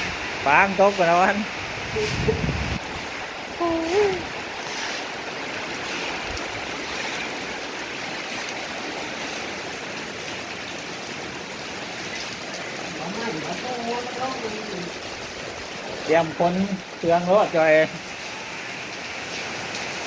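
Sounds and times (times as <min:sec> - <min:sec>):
heavy rain pouring: 0:00.0 - 0:20.0.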